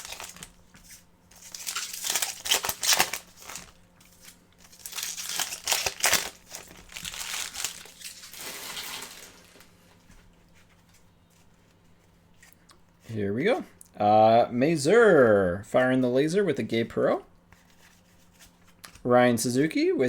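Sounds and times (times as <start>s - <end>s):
foil wrappers crinkling and tearing: 0.0s - 10.0s.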